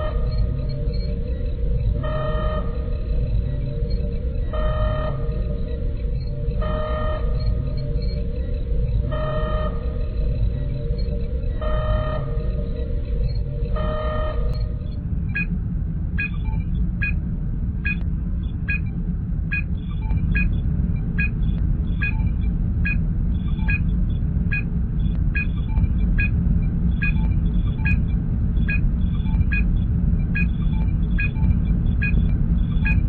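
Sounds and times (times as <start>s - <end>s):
low rumble of ship: 0.0s - 33.0s
high computer beeps and chirps: 22.0s - 23.9s, 27.0s - 28.0s, 28.6s - 33.0s.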